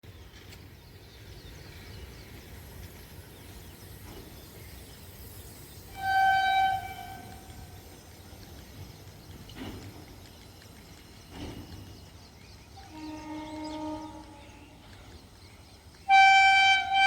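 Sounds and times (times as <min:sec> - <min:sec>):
locomotive horn blast: 0:05.9 - 0:07.5, 0:12.8 - 0:14.8, 0:16.1 - 0:17.0.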